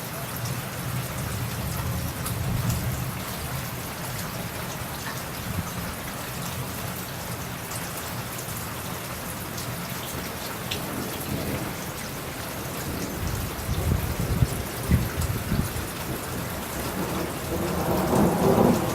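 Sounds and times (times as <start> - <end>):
rain falling: 0.0 - 18.9
thunder rumbling: 10.8 - 18.9.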